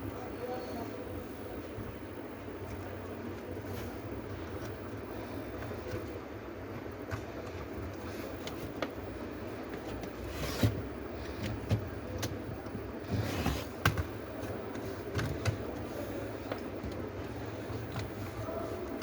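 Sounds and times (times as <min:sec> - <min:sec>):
low background hum: 0:00.0 - 0:19.0
laptop parts clicking and knocking: 0:15.1 - 0:15.9.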